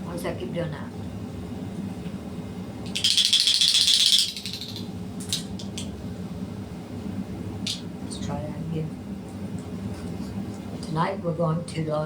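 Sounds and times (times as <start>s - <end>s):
quick rattling shake: 2.9s - 5.8s.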